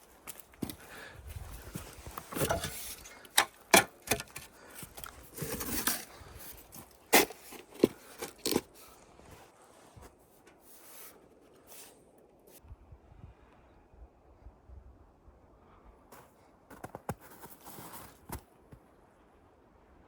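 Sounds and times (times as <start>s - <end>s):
scraping and rubbing: 5.2s - 8.7s.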